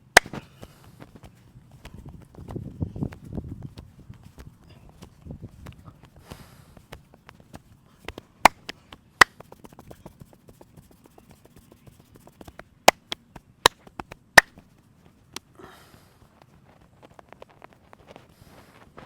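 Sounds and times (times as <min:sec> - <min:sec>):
sharp smacks: 0:00.0 - 0:01.1, 0:08.0 - 0:14.7
hands tapping and chopping massage: 0:00.0 - 0:15.5.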